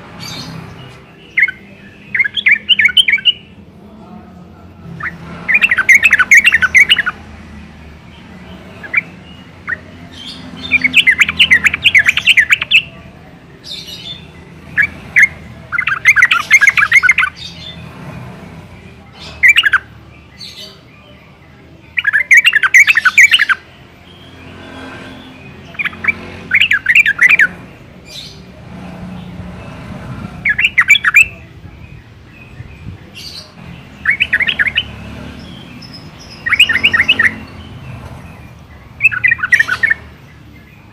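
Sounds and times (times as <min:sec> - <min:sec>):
bird singing bubbling notes: 0:36.3 - 0:37.6.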